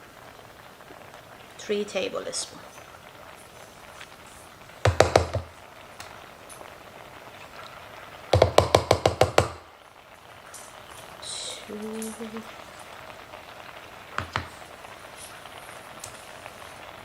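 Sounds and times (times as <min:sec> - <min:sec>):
spoon knocking on pan rim: 0:04.9 - 0:05.6, 0:08.4 - 0:09.7, 0:14.2 - 0:14.6.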